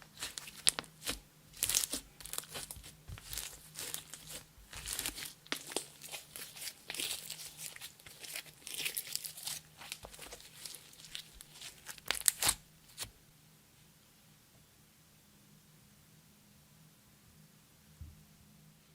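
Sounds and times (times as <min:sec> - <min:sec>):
slime squishing and crackling: 0:00.0 - 0:13.1.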